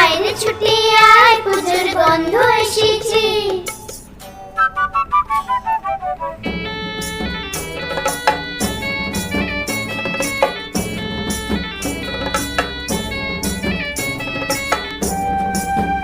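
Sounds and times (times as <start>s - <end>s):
drums keeping steady beat: 0.0s - 4.2s, 6.4s - 16.0s
plucked strings: 6.4s - 16.0s.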